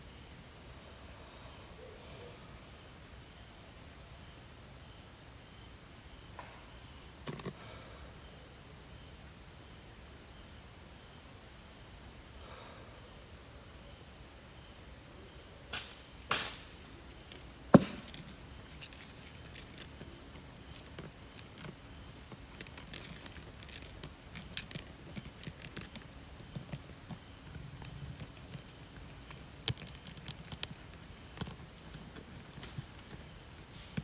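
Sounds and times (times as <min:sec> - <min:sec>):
sharp loud knock: 0:17.8 - 0:18.1
faint clicks and ticks: 0:18.1 - 0:34.0.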